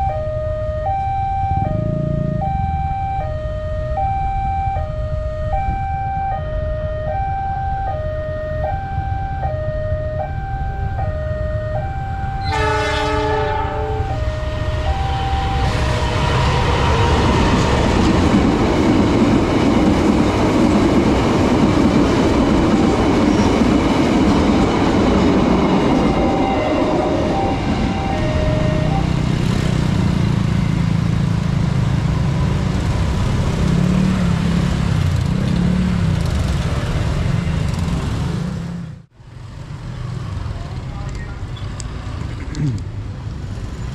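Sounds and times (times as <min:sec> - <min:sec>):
level-crossing warning siren: 0:00.0 - 0:30.9
train horn: 0:11.7 - 0:17.7, 0:26.0 - 0:29.2
train wheels rumbling and rattling: 0:14.0 - 0:38.5.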